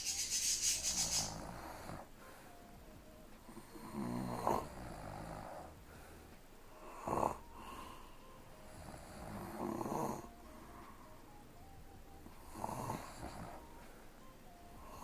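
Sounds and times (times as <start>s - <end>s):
woman snoring: 3.6s - 5.7s, 6.8s - 7.9s, 8.7s - 10.4s, 12.4s - 13.7s.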